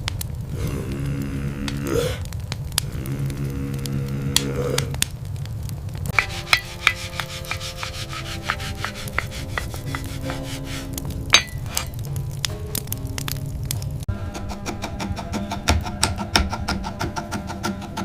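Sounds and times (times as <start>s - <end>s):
low background music: 5.9s - 18.0s
rubbing: 6.1s - 12.0s.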